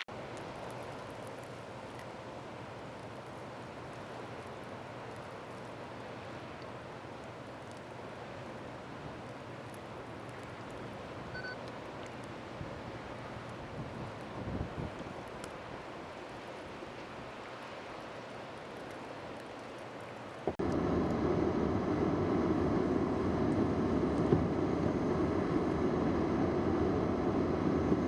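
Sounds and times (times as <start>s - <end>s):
blizzard wind rushing: 20.5s - 28.0s.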